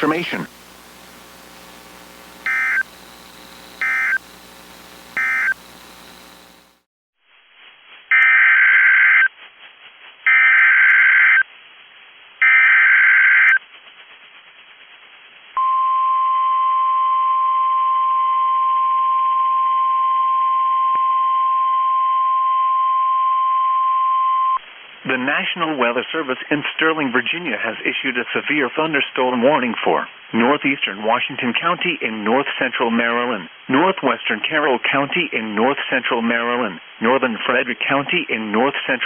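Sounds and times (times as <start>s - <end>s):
data bursts: 0.0s - 6.8s
steady warning alarm tone: 2.4s - 6.8s.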